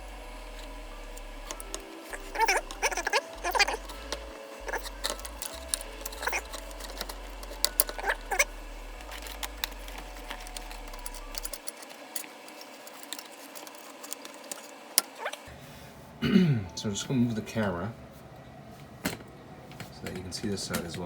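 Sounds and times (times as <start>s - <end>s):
plastic and metal clicks: 0.6s - 15.4s.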